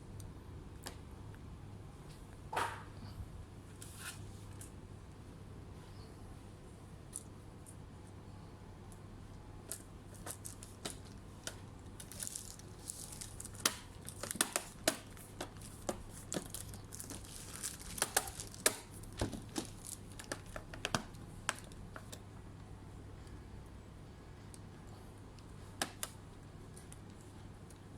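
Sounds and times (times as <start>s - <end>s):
plastic packaging crinkling: 9.7s - 21.8s
small clicks and taps: 18.0s - 22.2s.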